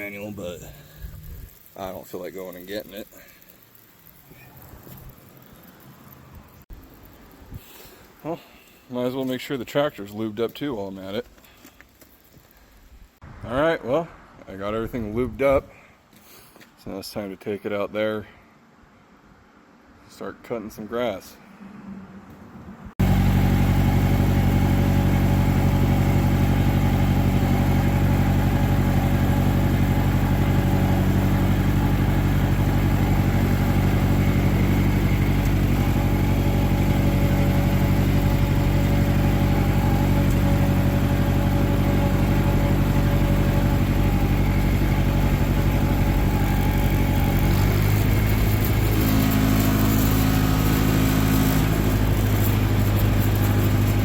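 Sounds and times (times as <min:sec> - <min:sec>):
tractor diesel engine running: 0:00.0 - 0:07.4, 0:23.0 - 0:54.0.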